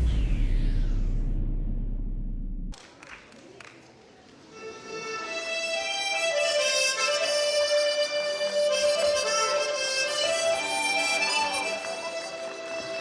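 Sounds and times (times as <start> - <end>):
folk dance music: 4.8 - 13.0.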